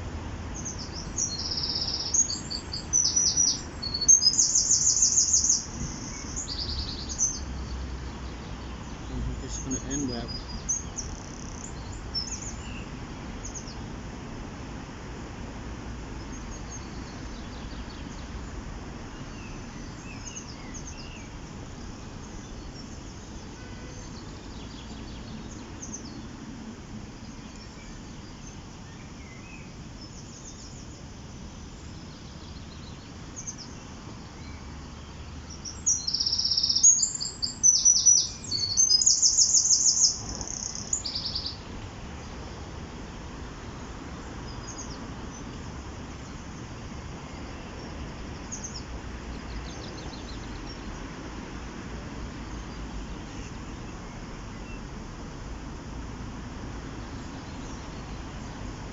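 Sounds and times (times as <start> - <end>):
faint distant bird chirps: 0.0 - 13.9, 16.2 - 51.3
small bird trilling: 35.8 - 41.6.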